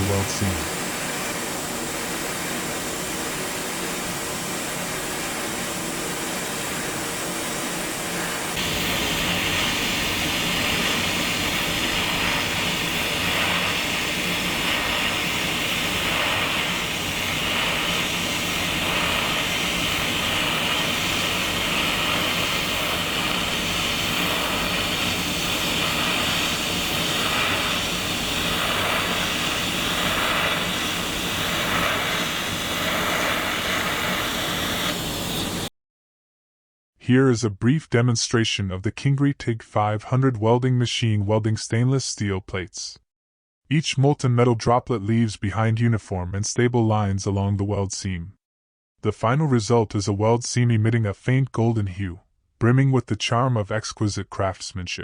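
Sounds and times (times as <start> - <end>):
welding arc hissing: 0.0 - 1.4, 7.7 - 35.7
machine hum: 7.2 - 35.7.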